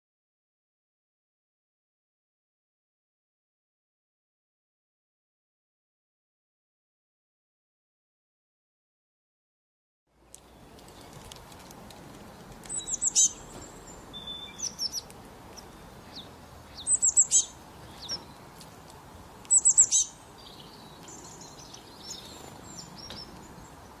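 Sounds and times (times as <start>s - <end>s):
small bird chirping: 12.6s - 18.7s, 19.4s - 24.0s.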